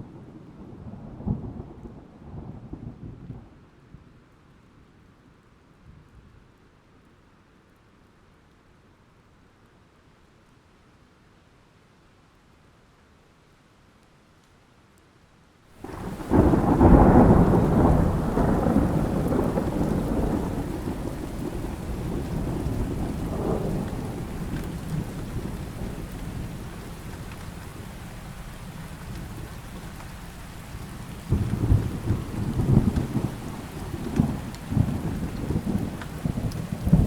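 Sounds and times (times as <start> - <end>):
steady rain: 0.0 - 37.0
thunder rolling: 15.8 - 37.0
thunder with crackles: 15.8 - 37.0.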